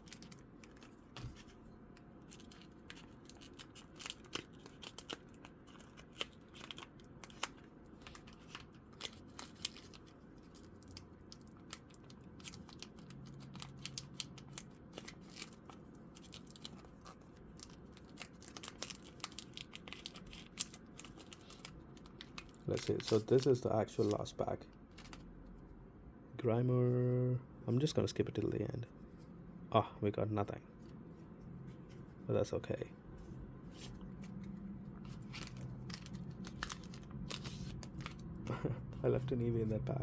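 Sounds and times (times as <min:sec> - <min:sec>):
foil wrapper crinkling and tearing: 0:02.2 - 0:24.3, 0:35.0 - 0:38.4
cards clicking and rustling: 0:02.3 - 0:24.2, 0:33.8 - 0:38.4.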